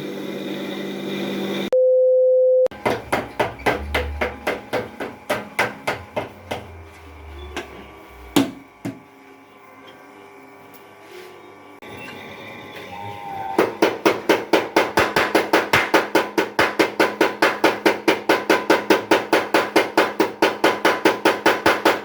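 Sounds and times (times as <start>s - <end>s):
power hammer blows: 2.7s - 6.9s, 13.5s - 22.0s.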